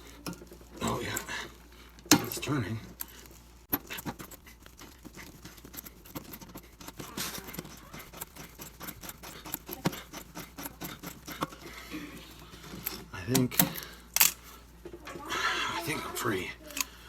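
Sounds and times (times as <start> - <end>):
wrench turning pipe fitting: 3.7 - 11.7
metal rasp: 3.7 - 13.1.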